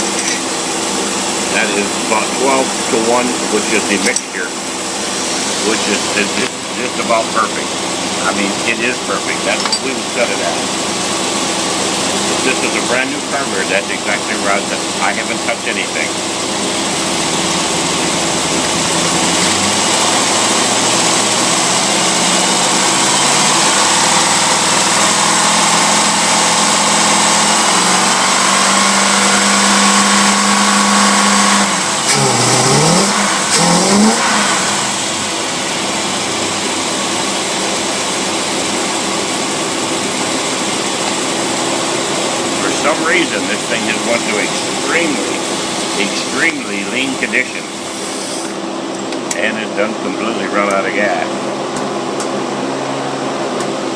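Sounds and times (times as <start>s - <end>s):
engine revving and stumbling: 0.0s - 47.9s
steady hum: 0.0s - 53.9s.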